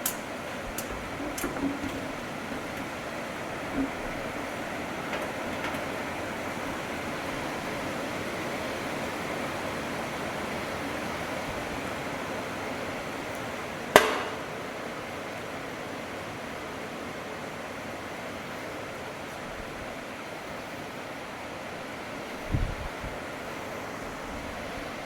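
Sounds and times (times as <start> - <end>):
steady hiss: 0.0 - 15.5
sharp ringing bang: 14.0 - 14.7.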